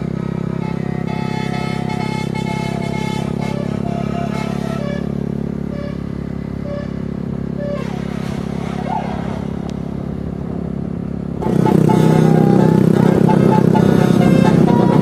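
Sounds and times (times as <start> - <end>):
short horn notes: 0.0 - 7.0, 11.4 - 15.0
multi-tone horn melody: 0.0 - 9.5, 11.4 - 15.0
bus engine running: 0.0 - 15.0.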